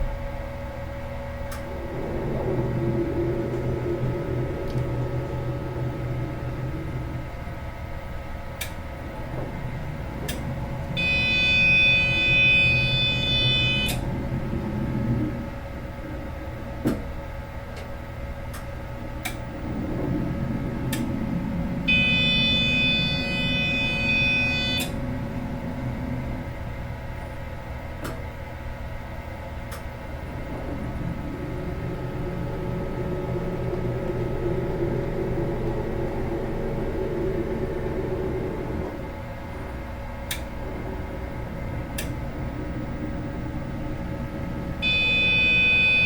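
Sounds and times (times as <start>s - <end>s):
medical scanner humming: 0.6s - 46.0s
loud buzzing tone: 10.8s - 14.1s, 21.8s - 25.5s, 44.7s - 46.0s.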